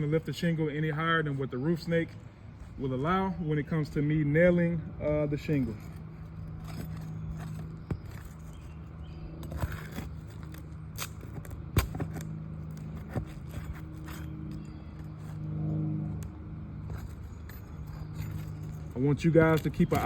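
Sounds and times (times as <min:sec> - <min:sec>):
steady low hum: 0:00.0 - 0:20.0
shingle scraping and clicks: 0:05.3 - 0:20.0.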